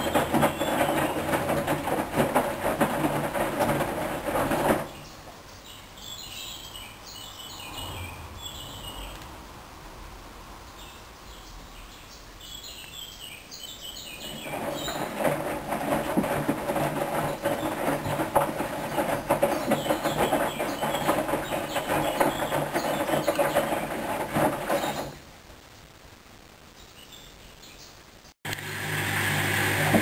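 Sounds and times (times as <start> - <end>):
washing machine water rushing: 0.0 - 5.0, 14.2 - 25.2, 28.5 - 30.0.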